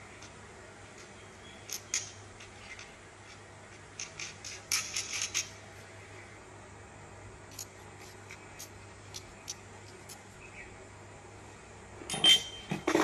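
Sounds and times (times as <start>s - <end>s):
metal parts clinking: 4.0s - 5.6s.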